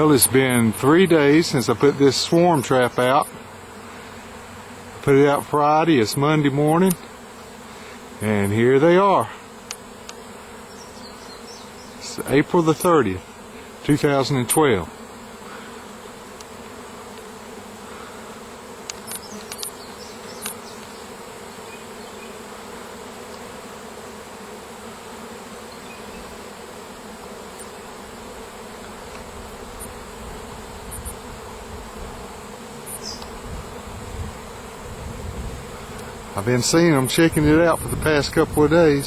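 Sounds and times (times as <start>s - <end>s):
bees buzzing: 0.0s - 39.0s
faint ticks: 9.6s - 10.2s, 18.8s - 21.0s, 35.9s - 36.1s.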